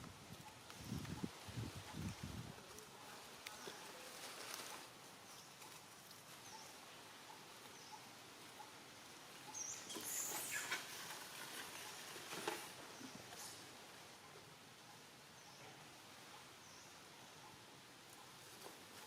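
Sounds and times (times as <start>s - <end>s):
light rustling and patter: 0.0s - 6.7s, 9.7s - 14.3s, 18.1s - 19.0s
young monkey squeaking: 9.8s - 10.9s.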